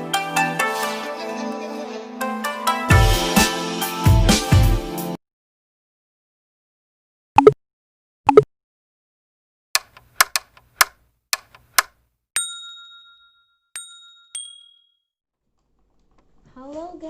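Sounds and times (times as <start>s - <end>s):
sharp clicks: 9.8s - 12.0s
bell-like dings: 12.4s - 15.1s.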